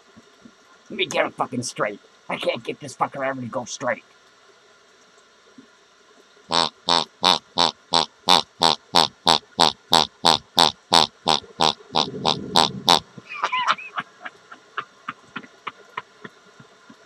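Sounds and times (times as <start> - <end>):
toy pig squeaky oinks: 6.5 - 13.0
short rumble: 11.8 - 13.3.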